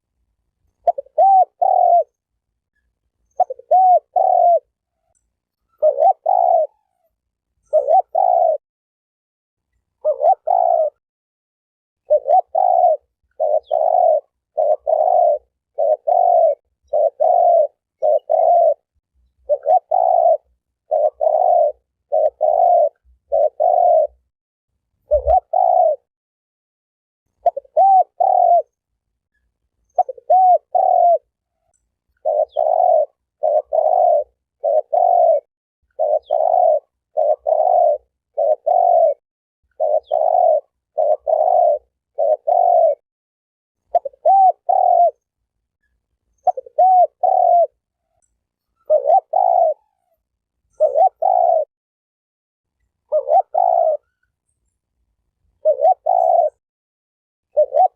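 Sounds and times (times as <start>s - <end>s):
dove cooing: 0.8s - 2.2s, 3.2s - 8.6s, 10.0s - 11.0s, 12.0s - 24.3s, 25.1s - 26.1s, 27.3s - 28.8s, 29.8s - 43.0s, 43.9s - 45.3s, 46.3s - 51.7s, 53.0s - 54.4s, 55.6s - 56.6s, 57.5s - 57.9s.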